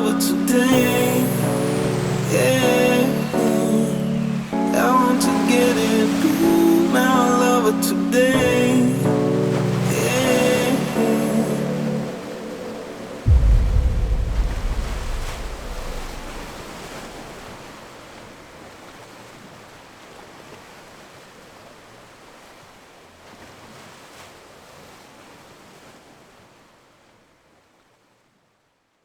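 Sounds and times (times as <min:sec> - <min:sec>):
hissing noise wash: 0:00.0 - 0:17.6
deep bass: 0:13.3 - 0:17.4.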